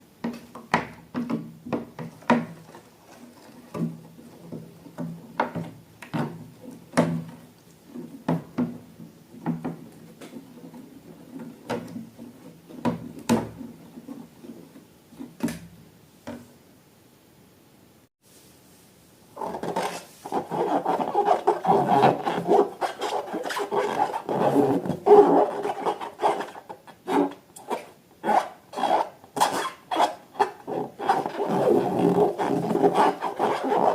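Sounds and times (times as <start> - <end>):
rubbing and squishing slime: 19.4 - 27.3, 28.9 - 33.9.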